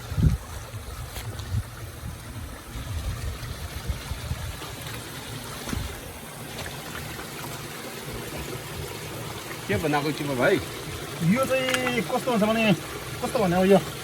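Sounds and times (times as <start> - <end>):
wind rumble on microphone: 0.0 - 6.2
stream rushing water: 0.0 - 14.0.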